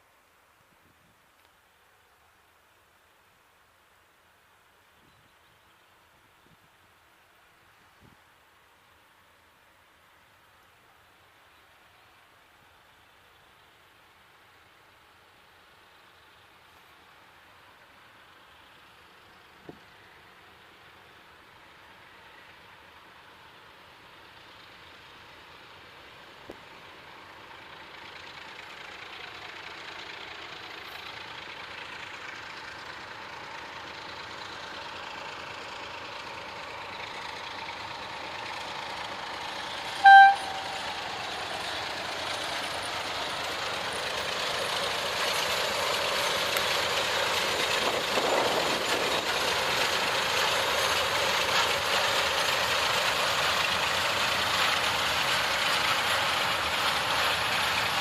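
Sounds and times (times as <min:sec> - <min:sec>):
diesel locomotive engine running: 0:08.9 - 0:58.0
locomotive horn blast: 0:40.0 - 0:41.1.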